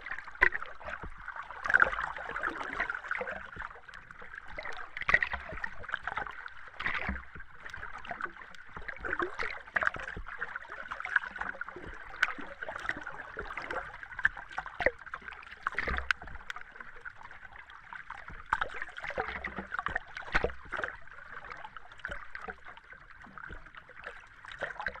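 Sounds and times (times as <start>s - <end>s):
underwater watery wash: 0.0s - 25.0s
bubbling pops and clicks: 15.6s - 16.6s.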